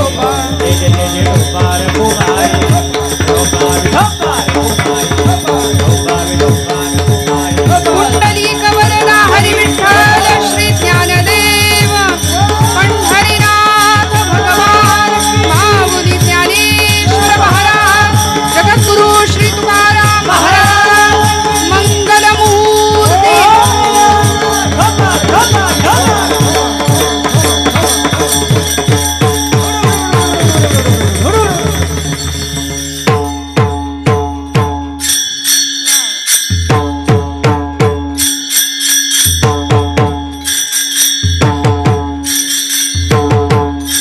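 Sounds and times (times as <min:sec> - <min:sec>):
group singing a chant: 0:00.0 - 0:31.8
drum beat: 0:00.0 - 0:34.9
hand cymbals: 0:00.0 - 0:44.0
harmonium drone: 0:00.0 - 0:44.0.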